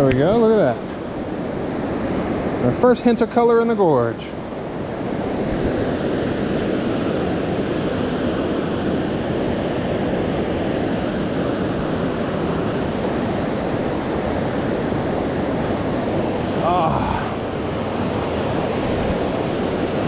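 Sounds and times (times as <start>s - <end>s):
rush of falling water: 15.7s - 20.0s.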